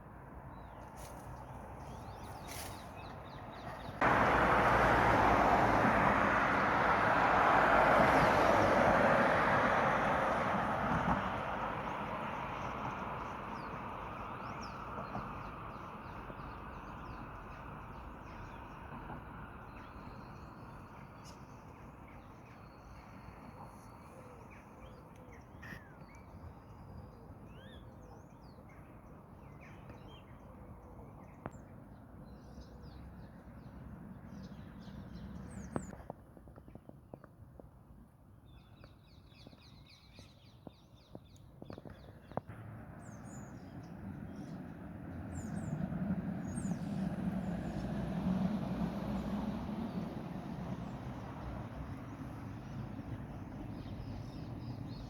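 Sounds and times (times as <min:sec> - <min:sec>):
small birds chirping: 0:00.5 - 0:04.3.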